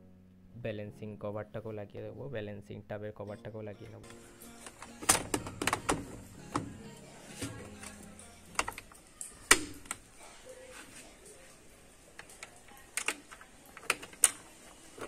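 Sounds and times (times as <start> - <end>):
washing machine parts clicking: 4.6 - 6.8, 7.4 - 10.1, 12.2 - 15.0.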